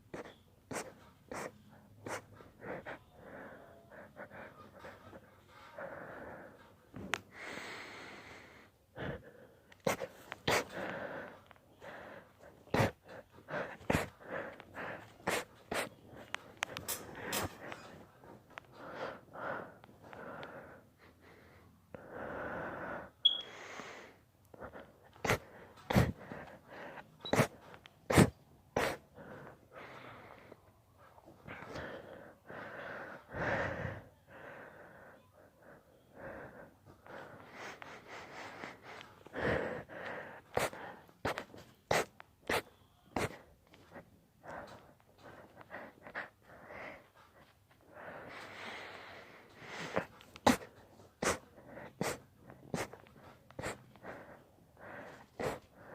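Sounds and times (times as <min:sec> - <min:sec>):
wheezy build-up breaths: 0:01.8 - 0:42.0, 0:43.2 - 0:55.9
person sneezing: 0:27.3 - 0:27.5, 0:28.1 - 0:29.0, 0:40.6 - 0:42.6, 0:50.4 - 0:51.4, 0:52.0 - 0:52.2.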